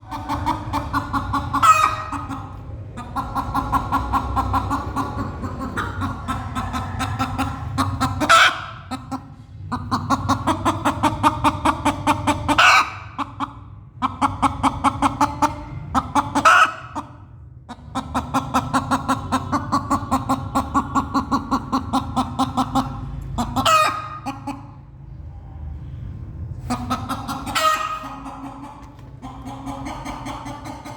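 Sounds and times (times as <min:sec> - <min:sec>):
hen squawking: 0:00.0 - 0:09.2, 0:17.9 - 0:24.8, 0:26.6 - 0:30.8
hen clucking rapidly: 0:00.0 - 0:24.8, 0:26.6 - 0:30.9.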